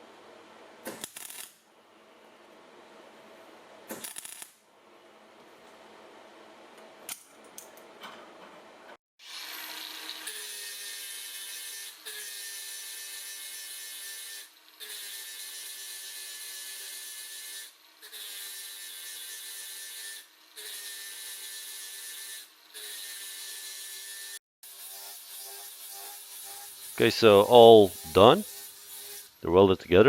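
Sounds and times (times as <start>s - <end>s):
arc welding crackling hiss: 0.8s - 1.6s, 3.9s - 4.5s, 24.7s - 29.6s.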